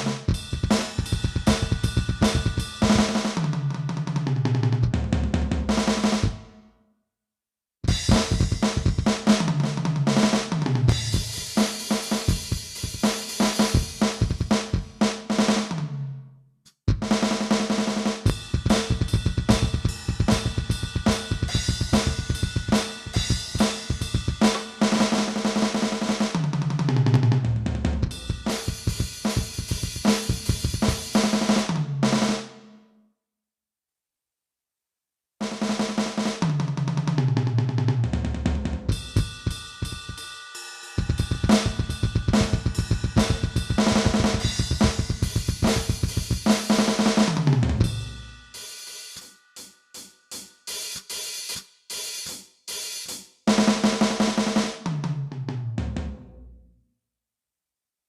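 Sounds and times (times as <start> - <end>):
electronic drum pattern: 0.0 - 3.3, 18.3 - 26.0, 28.0 - 31.3, 38.9 - 40.2, 41.0 - 48.2
tom fill: 18.2 - 31.8, 41.0 - 49.2.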